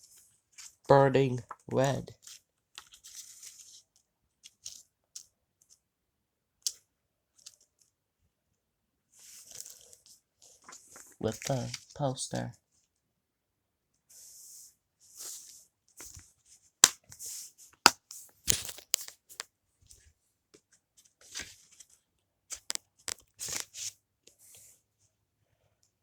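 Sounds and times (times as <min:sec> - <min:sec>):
packaging and paper rustling: 0:18.5 - 0:19.4.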